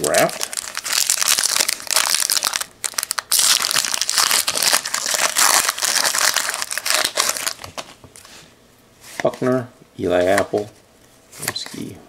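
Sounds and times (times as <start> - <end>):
wrapper tearing and crinkling: 0.0 - 7.8.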